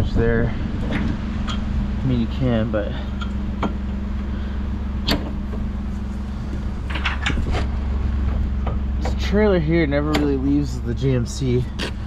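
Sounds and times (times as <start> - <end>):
truck engine droning: 0.0 - 12.0
sharp clicks and knocks: 3.2 - 3.8, 5.0 - 5.7, 6.5 - 9.2, 10.1 - 10.4.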